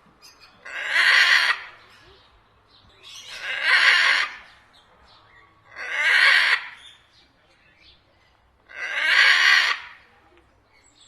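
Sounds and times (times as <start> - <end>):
parrot squawking: 0.6 - 1.7, 3.2 - 4.4, 5.7 - 6.9.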